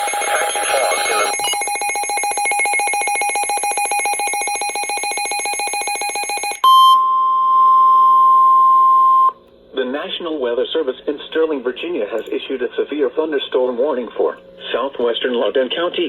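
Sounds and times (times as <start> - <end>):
steady single-pitch warning tone: 0.0 - 9.4.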